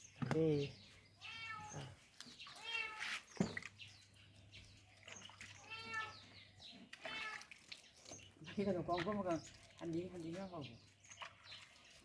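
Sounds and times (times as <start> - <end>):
cat meowing: 1.2 - 1.9, 5.7 - 6.2.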